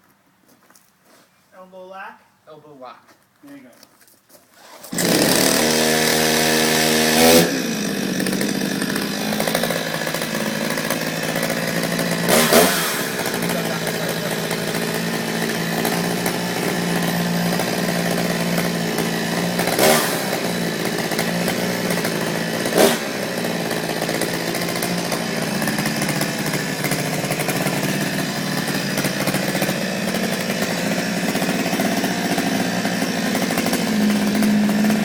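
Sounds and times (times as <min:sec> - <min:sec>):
chainsaw running: 0:04.6 - 0:35.0.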